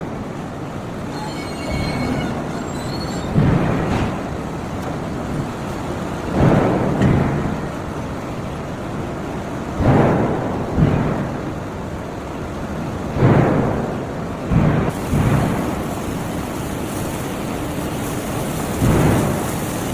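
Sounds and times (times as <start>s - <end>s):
industrial machinery din: 0.0s - 12.2s, 13.0s - 19.9s
faint high squealing: 1.0s - 3.4s.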